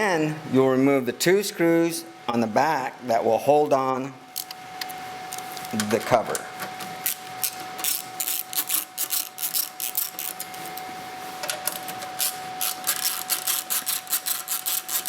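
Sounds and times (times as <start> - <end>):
screwdriver clicking and scraping: 7.1 - 10.7, 11.7 - 15.0.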